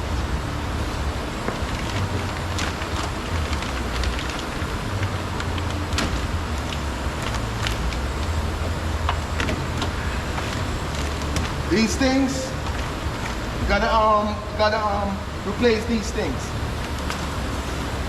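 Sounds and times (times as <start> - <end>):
low rumbling background noise: 0.0 - 18.0.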